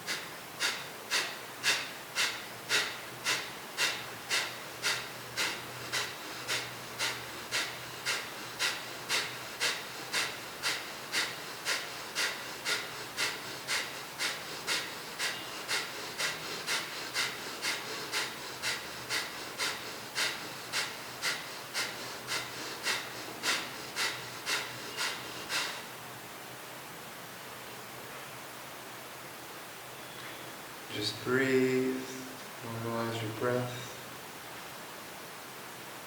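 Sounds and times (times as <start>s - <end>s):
sharp forceful nasal exhales: 0.0s - 25.9s.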